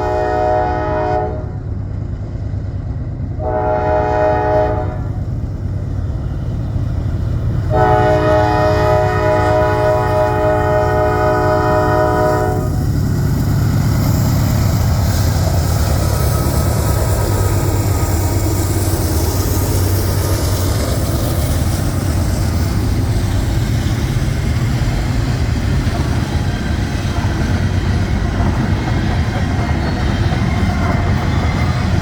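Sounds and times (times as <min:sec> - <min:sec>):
locomotive horn: 0:00.0 - 0:01.7, 0:03.4 - 0:05.2, 0:07.7 - 0:12.8
train wheels rumbling on rail: 0:00.0 - 0:32.0.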